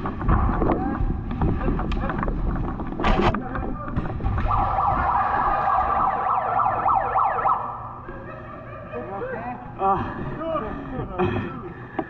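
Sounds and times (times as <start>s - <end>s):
siren-like wailing tone: 4.4s - 8.0s.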